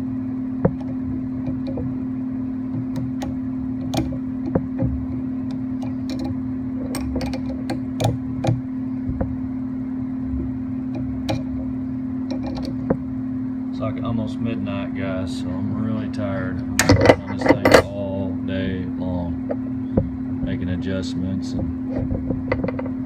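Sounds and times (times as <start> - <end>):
low background hum: 0.0 - 23.0
small clicks and metal knocks: 0.6 - 2.0, 2.7 - 9.4, 10.9 - 13.1, 16.8 - 18.0, 21.5 - 23.0.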